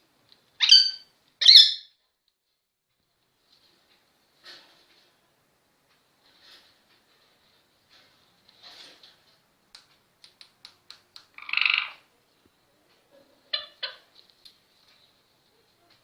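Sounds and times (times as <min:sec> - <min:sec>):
parrot squawk: 0:00.6 - 0:01.9, 0:11.4 - 0:12.0, 0:13.5 - 0:14.1.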